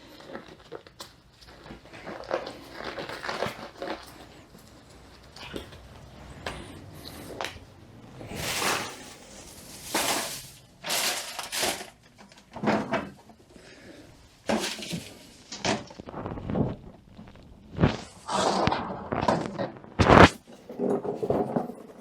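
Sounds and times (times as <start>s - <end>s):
metal tools clattering and scraping: 8.2s - 13.4s, 14.5s - 15.4s.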